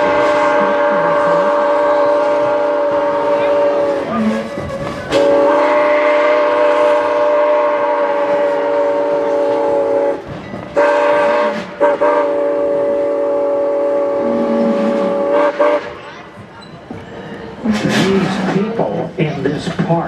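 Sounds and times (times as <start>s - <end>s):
steam locomotive whistle blasts: 0.0s - 4.5s, 5.1s - 10.2s, 10.8s - 16.0s.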